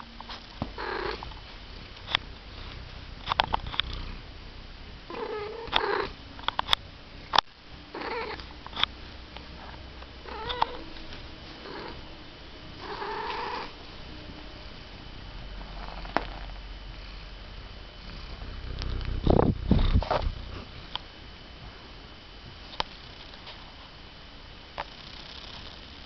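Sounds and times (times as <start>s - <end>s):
cat purring: 0.7s - 6.2s, 7.9s - 12.1s, 12.7s - 17.4s, 18.0s - 20.9s, 24.8s - 25.9s.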